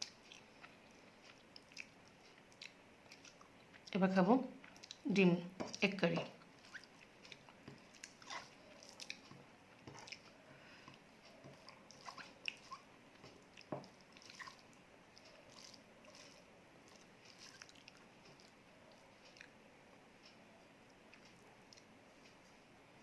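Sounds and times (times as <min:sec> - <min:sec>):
person chewing food: 0:00.0 - 0:03.9, 0:04.6 - 0:22.4.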